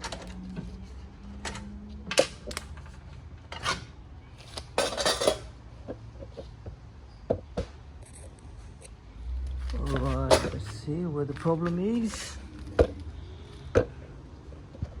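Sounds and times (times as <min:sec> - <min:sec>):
metal tools clinking and scraping: 0:01.4 - 0:05.6, 0:09.6 - 0:12.4
metal parts clattering: 0:04.5 - 0:05.5.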